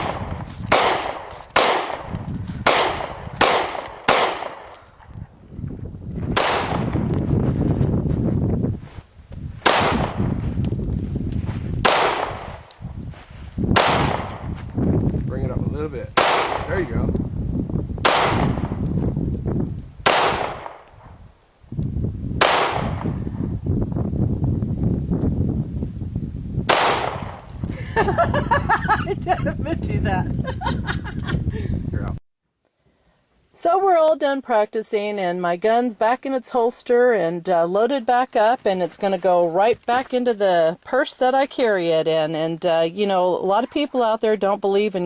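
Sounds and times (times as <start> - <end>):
pistol shots with echo: 0.0 - 5.0, 6.4 - 6.9, 16.2 - 16.7, 20.1 - 20.9, 22.4 - 23.1, 26.7 - 27.4.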